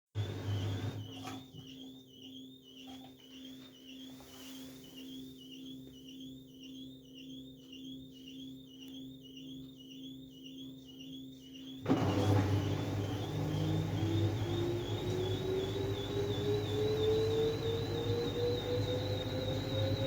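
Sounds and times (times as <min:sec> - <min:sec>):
washing machine hum: 0:00.0 - 0:01.9, 0:11.8 - 0:20.0
washing machine squeaking: 0:00.1 - 0:04.2, 0:04.9 - 0:20.0.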